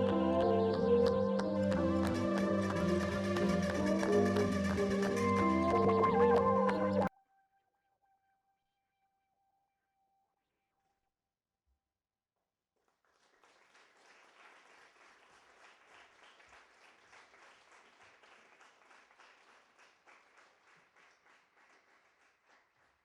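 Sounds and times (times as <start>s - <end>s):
faint audience applause: 0.0s - 7.1s, 12.9s - 23.0s.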